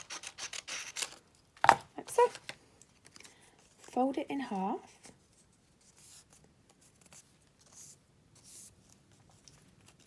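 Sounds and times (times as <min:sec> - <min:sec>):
paper rustling being folded: 0:02.9 - 0:10.0.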